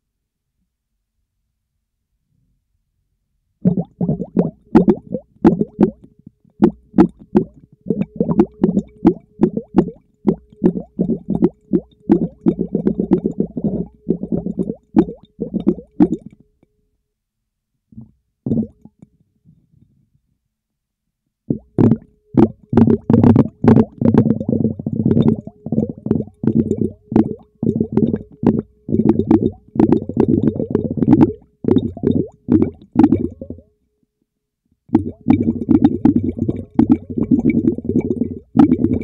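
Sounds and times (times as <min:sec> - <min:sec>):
underwater bubbling pops: 0:03.6 - 0:16.4, 0:18.0 - 0:19.1, 0:21.5 - 0:33.6, 0:34.9 - 0:39.0.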